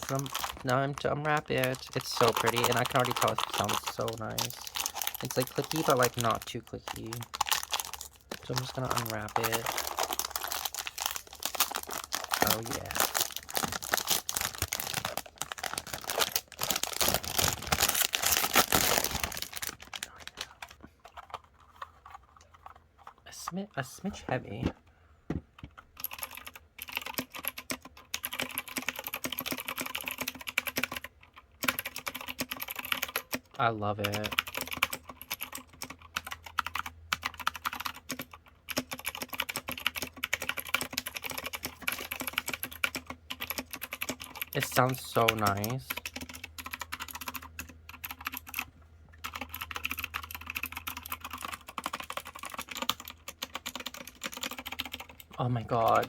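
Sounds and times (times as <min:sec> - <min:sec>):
mechanical keyboard typing: 0:00.0 - 0:21.5, 0:25.6 - 0:56.0
plastic wrapping crinkling and tearing: 0:00.0 - 0:21.8.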